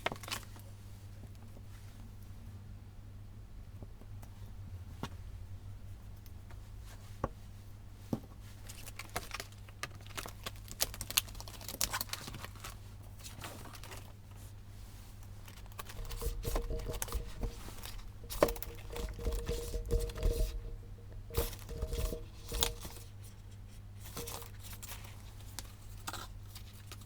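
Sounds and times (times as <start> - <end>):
paper rustling: 15.5 - 23.4.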